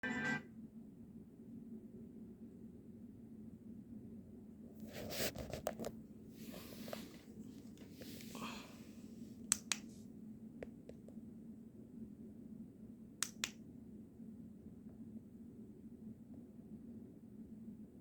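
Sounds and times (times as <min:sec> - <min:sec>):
faint low hum: 0:00.0 - 0:18.0
soft rustle: 0:04.8 - 0:10.1
sharp clicks: 0:09.5 - 0:09.9, 0:13.2 - 0:13.6.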